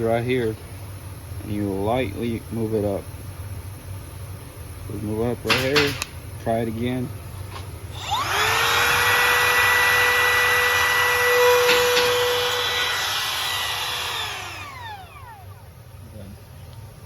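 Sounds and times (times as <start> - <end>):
router high whine: 7.9 - 16.1.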